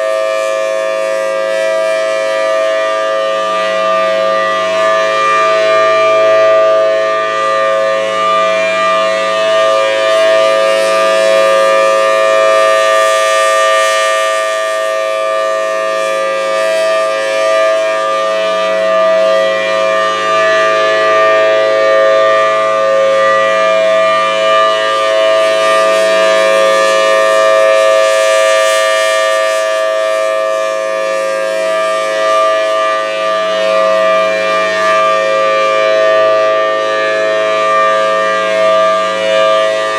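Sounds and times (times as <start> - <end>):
tornado siren steady two-note chord: 0.0 - 39.9.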